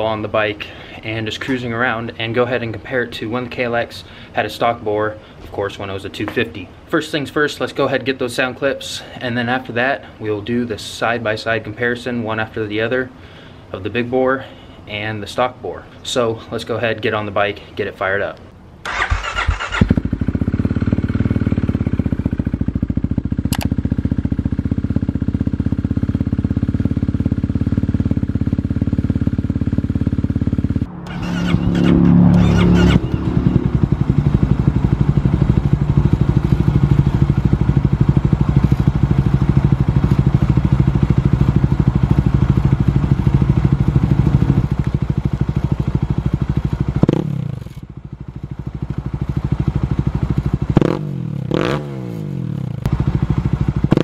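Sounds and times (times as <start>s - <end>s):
motorcycle engine idling and revving: 18.9s - 54.0s.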